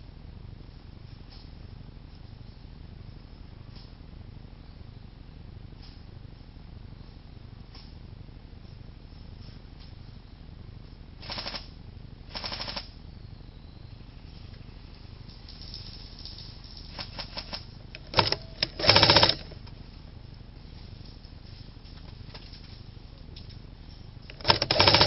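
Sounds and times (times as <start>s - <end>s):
airsoft guns firing bursts: 11.2s - 11.6s, 12.3s - 12.8s, 16.9s - 19.5s, 24.3s - 25.0s.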